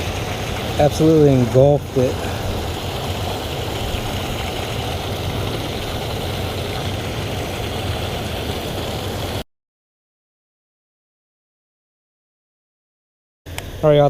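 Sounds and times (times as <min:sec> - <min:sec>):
water pouring over waterfall: 0:00.0 - 0:09.4.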